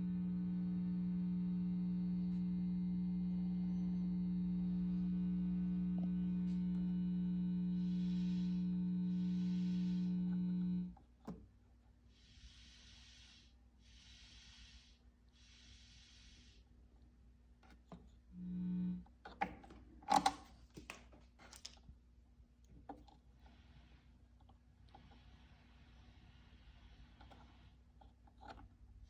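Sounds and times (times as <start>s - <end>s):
amplifier mains hum: 0.0s - 11.0s, 18.3s - 19.2s.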